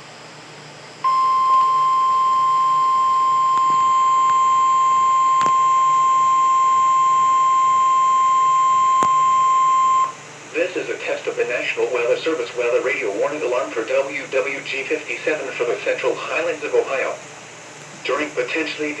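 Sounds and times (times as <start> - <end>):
steady high beep: 1.0 - 10.2.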